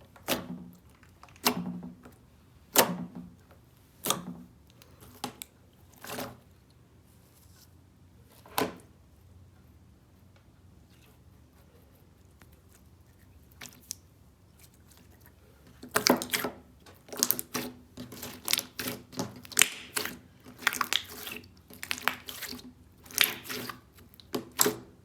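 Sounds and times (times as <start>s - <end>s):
sticky material squishing by hand: 12.0s - 25.0s.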